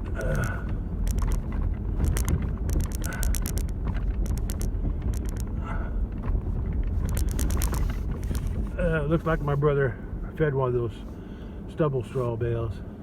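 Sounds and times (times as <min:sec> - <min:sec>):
sharp rattling clicks: 0:00.0 - 0:05.6, 0:07.0 - 0:08.6
truck engine and tyres rumbling: 0:00.0 - 0:13.0.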